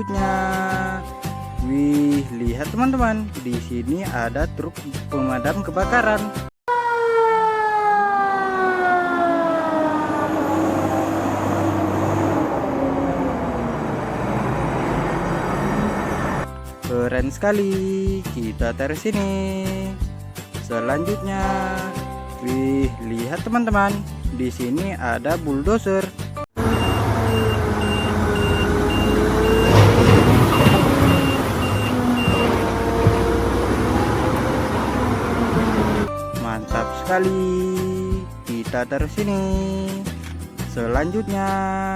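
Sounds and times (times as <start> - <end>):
fire truck siren wail: 6.7 - 16.5, 26.6 - 36.1
bulldozer engine running: 10.2 - 16.5, 26.6 - 36.1
reversing alarm beeping: 13.9 - 16.4, 26.6 - 35.0.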